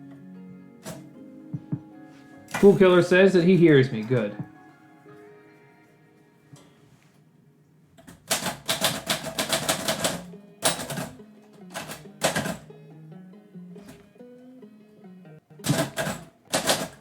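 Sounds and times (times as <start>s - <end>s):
background music: 0.0s - 17.0s
typewriter keys striking: 8.0s - 12.6s, 15.6s - 17.0s.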